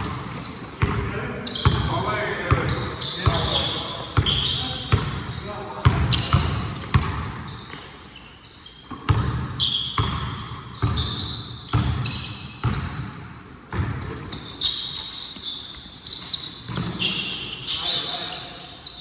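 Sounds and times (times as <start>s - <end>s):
basketball bouncing: 0.0s - 1.9s, 2.5s - 7.9s, 8.9s - 15.5s
sneaker squeaks: 0.0s - 19.0s.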